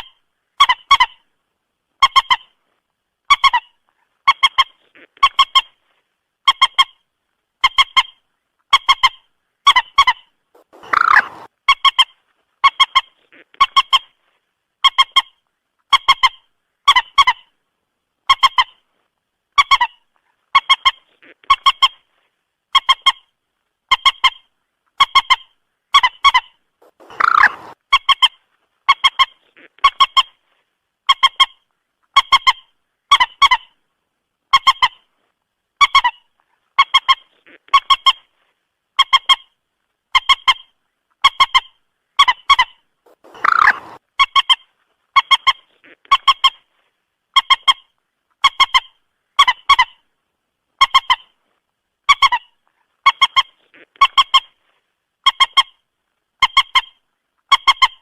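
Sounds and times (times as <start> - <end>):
moorhen honking calls: 10.6 - 11.5, 26.8 - 27.8, 42.4 - 44.0.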